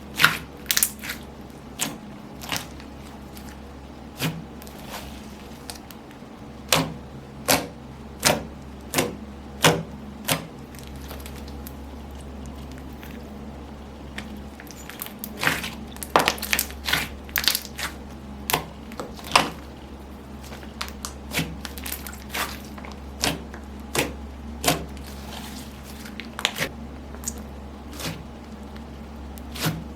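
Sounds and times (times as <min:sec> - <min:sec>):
slime popping and crackling: 0:00.1 - 0:03.6, 0:14.1 - 0:19.8, 0:20.4 - 0:28.8.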